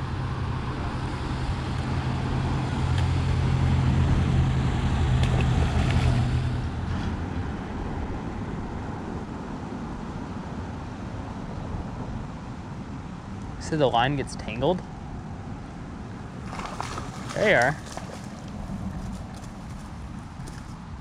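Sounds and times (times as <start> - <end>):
vehicle engine humming: 0.0 - 9.4, 14.4 - 21.0.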